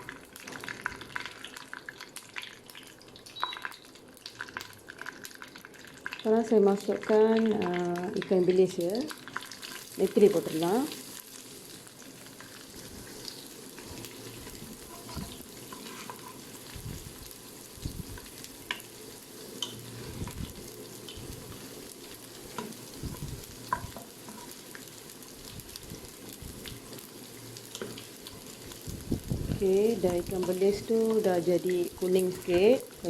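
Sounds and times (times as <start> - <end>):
food sizzling in hot oil: 0.0 - 33.0.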